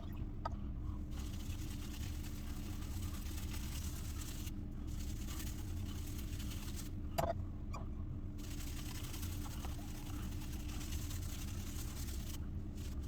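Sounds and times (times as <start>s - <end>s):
steady low hum: 0.0s - 13.0s
shaving brush working lather: 1.1s - 7.0s, 8.4s - 13.0s.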